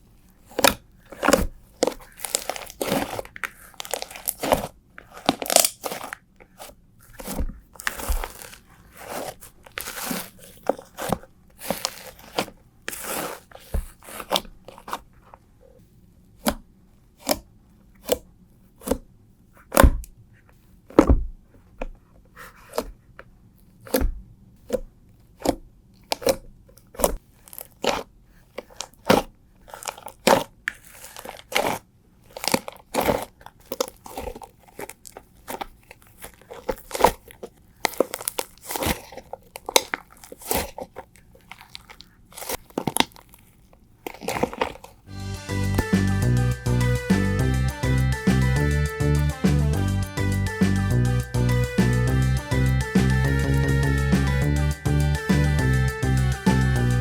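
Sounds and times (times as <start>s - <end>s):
slime squishing and crackling: 0.0s - 15.1s, 23.7s - 45.1s.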